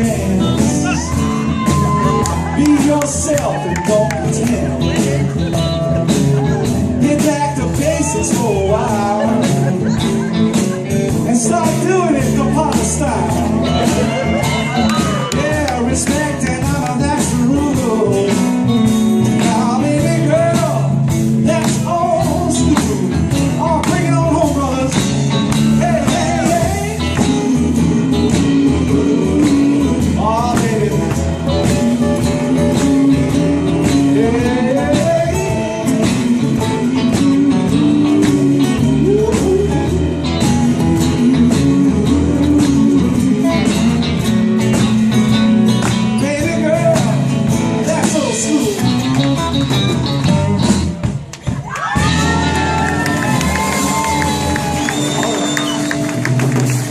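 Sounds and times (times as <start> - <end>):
lead guitar melody bending: 0.0 - 51.1
live blues-rock band: 0.0 - 56.9.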